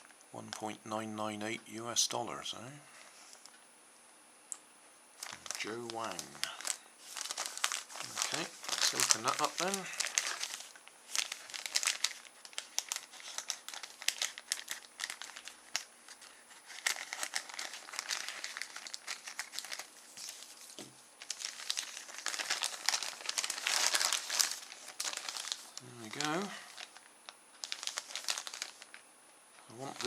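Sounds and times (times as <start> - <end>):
package tearing: 5.2 - 20.4, 21.2 - 26.9, 27.6 - 29.0
packaging crinkling and rustling: 5.2 - 29.0, 29.6 - 30.0.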